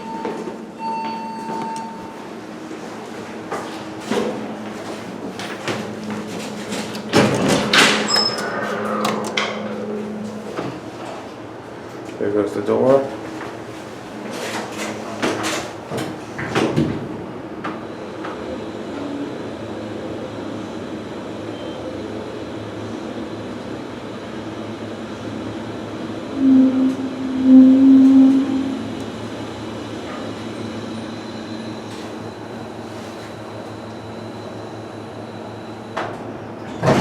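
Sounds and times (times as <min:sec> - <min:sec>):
elevator running hum: 0:00.0 - 0:37.0
elevator doors sliding shut: 0:05.1 - 0:11.9, 0:26.3 - 0:30.4
loud low tone: 0:26.3 - 0:29.3.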